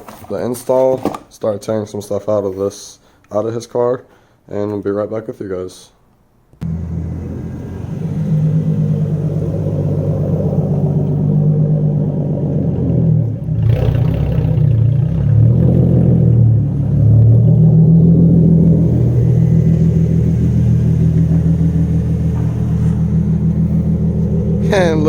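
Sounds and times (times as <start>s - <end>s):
car engine droning: 6.6s - 25.0s.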